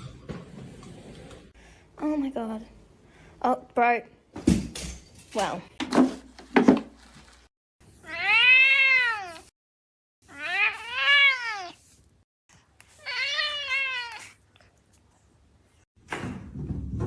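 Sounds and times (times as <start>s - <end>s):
cat meowing: 8.0s - 9.5s, 10.3s - 11.8s, 12.9s - 14.4s.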